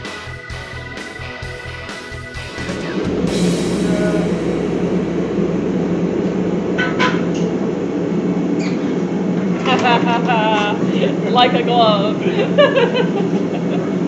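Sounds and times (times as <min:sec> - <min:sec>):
background music: 0:00.0 - 0:07.2
loud steady mechanical noise: 0:00.0 - 0:14.0.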